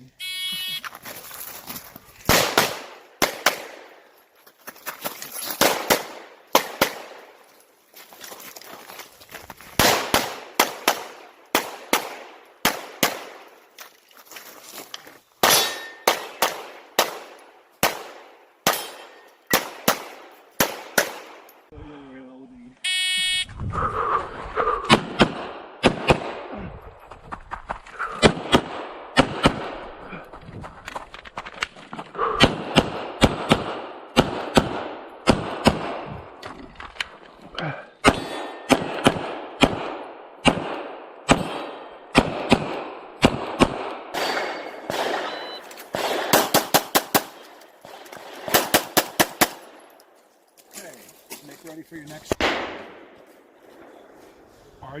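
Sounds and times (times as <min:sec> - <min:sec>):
start buzzer: 0:00.2 - 0:00.9, 0:22.8 - 0:23.5
pistol shots: 0:02.3 - 0:04.0, 0:05.6 - 0:07.3, 0:09.8 - 0:13.5, 0:15.4 - 0:21.5, 0:24.9 - 0:26.5, 0:28.2 - 0:29.9, 0:32.4 - 0:36.1, 0:38.0 - 0:49.8, 0:52.3 - 0:53.1.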